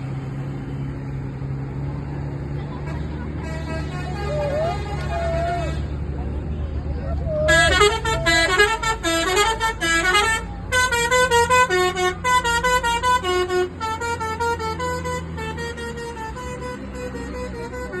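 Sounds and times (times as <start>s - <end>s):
low engine rumble: 0.0s - 18.0s
bus musical air horn tune: 2.7s - 6.0s, 7.4s - 18.0s.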